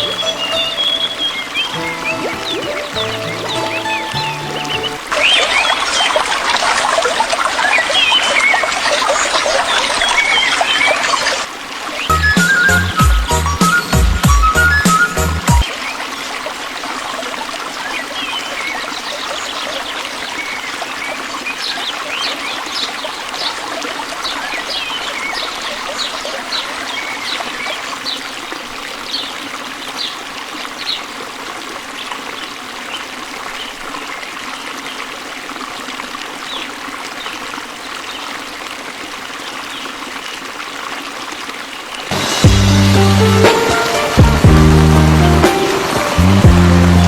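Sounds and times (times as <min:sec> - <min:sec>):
bird chirping: 0:00.0 - 0:06.3
stream water trickling: 0:00.0 - 0:47.0.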